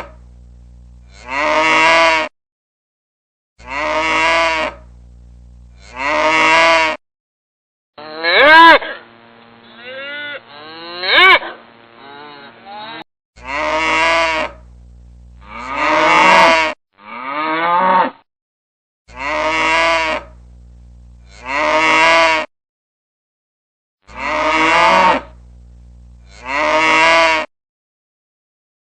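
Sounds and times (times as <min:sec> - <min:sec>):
cattle mooing: 0:01.1 - 0:02.3, 0:05.8 - 0:07.0, 0:09.7 - 0:14.6, 0:15.4 - 0:18.1, 0:19.1 - 0:20.4, 0:21.2 - 0:22.5, 0:24.1 - 0:25.4, 0:26.2 - 0:27.5.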